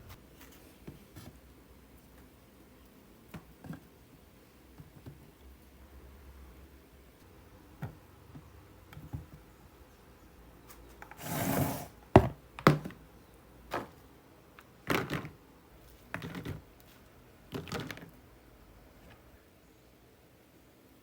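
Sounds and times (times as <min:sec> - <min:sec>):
rustling scrape: 0:11.1 - 0:12.0
objects knocking and clattering: 0:14.9 - 0:15.4, 0:17.5 - 0:18.2.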